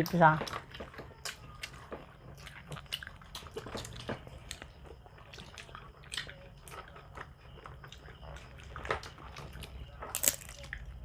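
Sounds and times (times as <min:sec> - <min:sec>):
people chewing food: 0:00.0 - 0:11.0.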